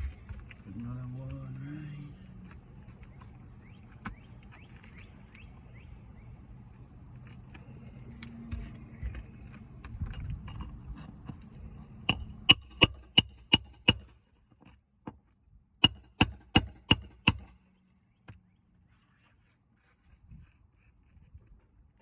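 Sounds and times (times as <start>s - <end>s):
hammer striking roofing nails: 12.1s - 14.1s, 15.8s - 17.6s.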